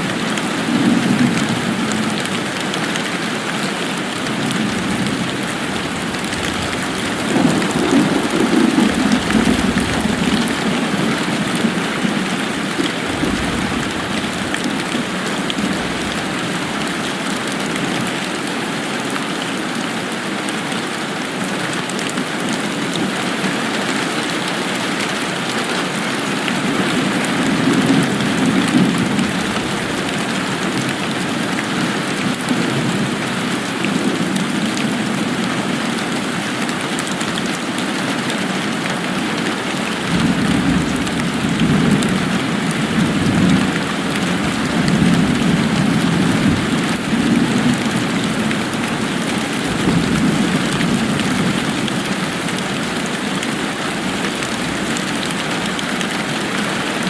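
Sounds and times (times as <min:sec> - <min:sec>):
steady rain falling: 0:00.0 - 0:57.0
low rolls of thunder: 0:04.5 - 0:17.4, 0:40.1 - 0:52.5.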